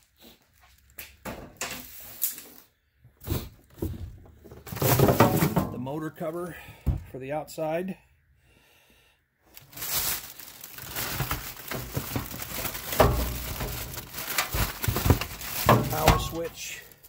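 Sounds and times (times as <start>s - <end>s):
packaging crinkling: 9.5s - 17.0s.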